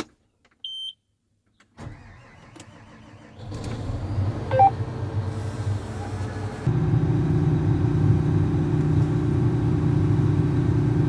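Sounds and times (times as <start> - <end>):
diesel engine cranking and running: 1.8 - 11.0
short electronic beep: 4.5 - 4.7
brief tone: 4.5 - 4.8.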